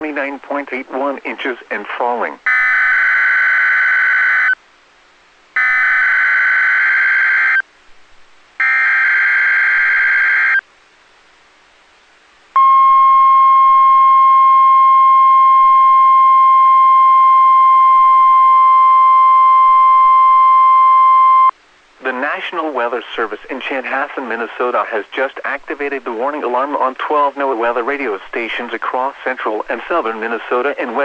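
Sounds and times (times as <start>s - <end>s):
steady warning alarm tone: 5.6s - 7.6s, 8.6s - 10.6s.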